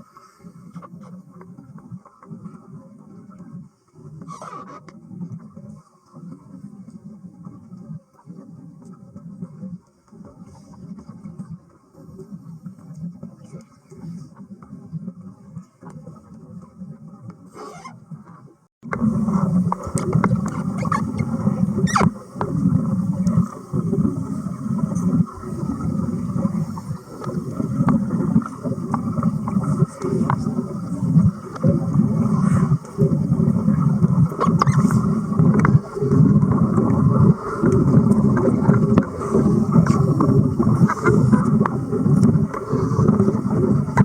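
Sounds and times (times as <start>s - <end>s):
underwater welding arc bubbling: 0.0s - 44.0s.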